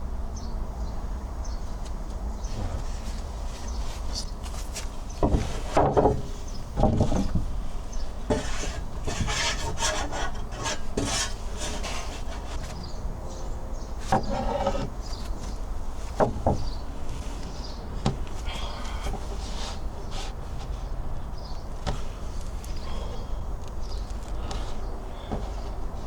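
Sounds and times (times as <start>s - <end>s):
rough scraping and rubbing: 2.5s - 7.4s, 8.3s - 12.8s, 14.0s - 17.8s, 18.6s - 21.0s.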